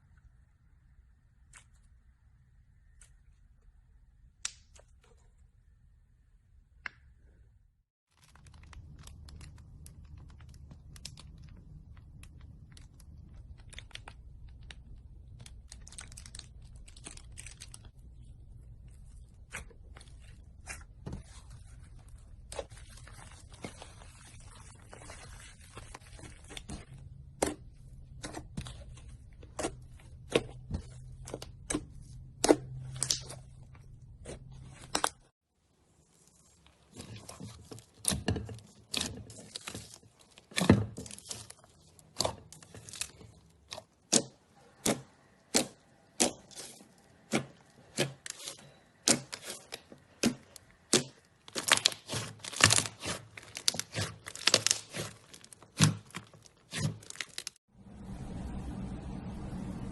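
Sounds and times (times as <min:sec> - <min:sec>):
slime popping and crackling: 0:08.1 - 0:18.0, 0:36.3 - 0:57.6
low steady hum: 0:57.8 - 0:59.9.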